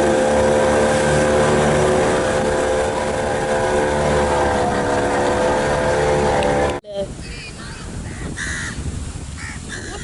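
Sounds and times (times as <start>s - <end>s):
motorboat engine droning: 0.0s - 6.8s
water noise: 0.0s - 10.0s.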